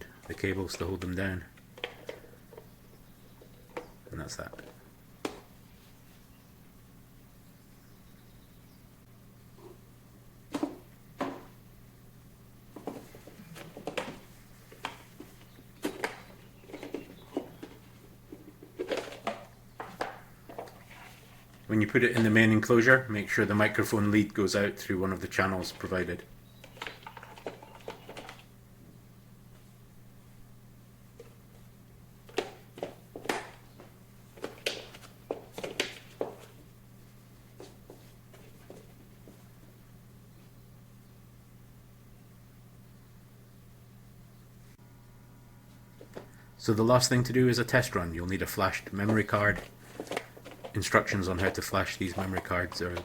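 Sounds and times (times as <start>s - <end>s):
faint steady hum: 0.0s - 53.0s
plastic parts clicking and knocking: 1.8s - 2.7s, 26.6s - 28.5s.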